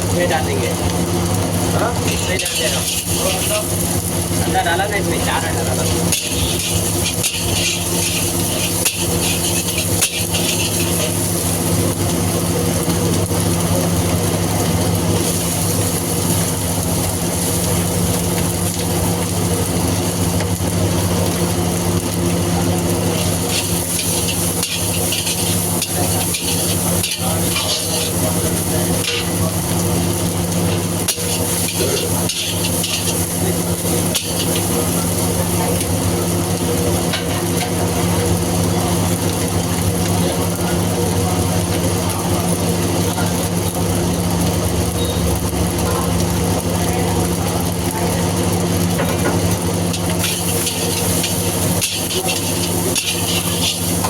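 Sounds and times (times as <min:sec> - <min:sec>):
eggs sizzling in a wok: 0:00.0 - 0:54.0
metal ladle scraping a pan: 0:05.8 - 0:11.3, 0:23.2 - 0:29.3, 0:30.7 - 0:33.5, 0:34.1 - 0:34.8, 0:50.0 - 0:54.0.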